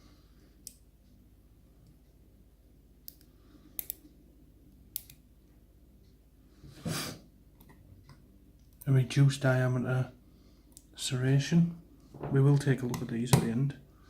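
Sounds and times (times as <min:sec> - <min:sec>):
small sharp metal clicks: 0:03.0 - 0:04.0, 0:04.9 - 0:05.2.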